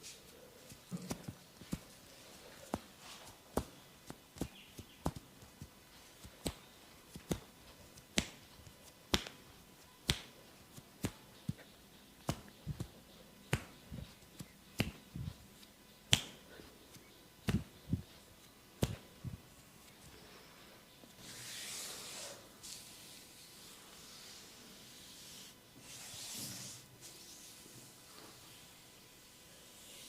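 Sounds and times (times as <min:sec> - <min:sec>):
percussive massage slaps: 0:03.5 - 0:09.4, 0:10.0 - 0:11.6, 0:12.2 - 0:15.4, 0:16.1 - 0:16.4, 0:17.4 - 0:18.0, 0:18.8 - 0:19.4.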